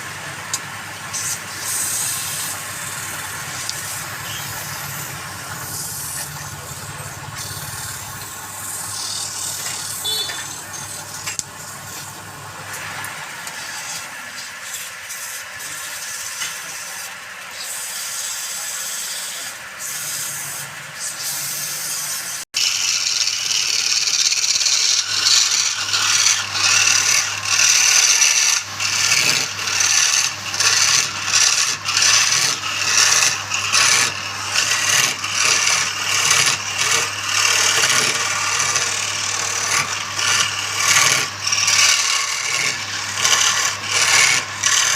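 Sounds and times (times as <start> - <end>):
wood lathe motor hum: 0.0 - 44.9
tool rasping on spinning wood: 1.0 - 44.9.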